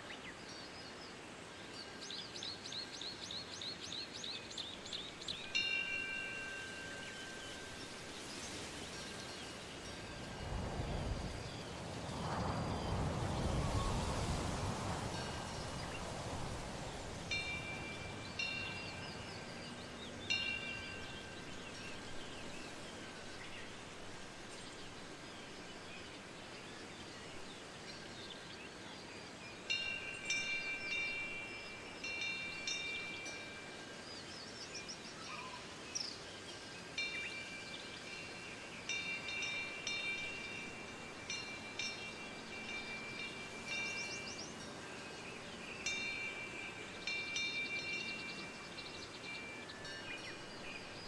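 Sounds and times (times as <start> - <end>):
faint wind hiss: 0.0 - 51.0
birds chirping: 1.8 - 28.8
metal wind bell ringing: 5.4 - 11.4, 17.1 - 23.6, 29.7 - 34.0, 37.0 - 51.0.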